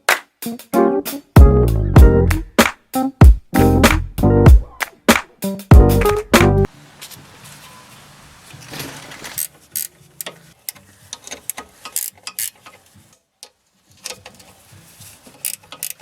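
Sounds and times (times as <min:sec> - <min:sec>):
ratchet wrench clicking: 0:09.4 - 0:12.8, 0:15.3 - 0:16.0.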